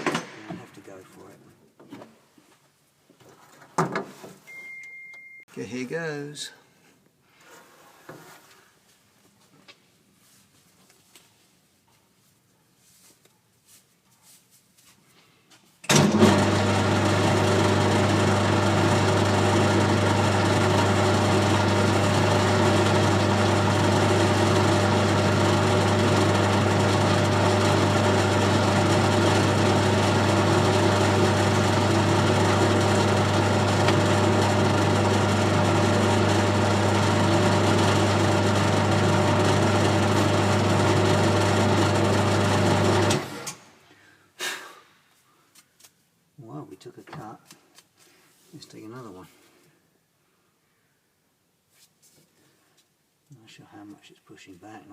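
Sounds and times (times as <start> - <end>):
lathe running with low hum: 15.9 - 43.5.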